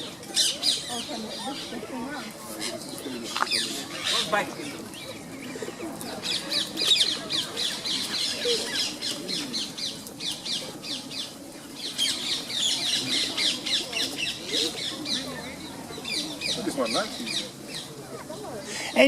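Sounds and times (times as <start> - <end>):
parakeets shrill chirping: 2.7 - 9.1.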